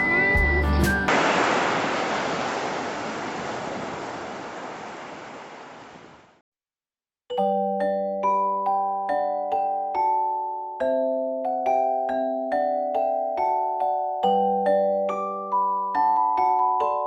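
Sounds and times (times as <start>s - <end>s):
sea surf washing on shore: 1.1s - 6.4s.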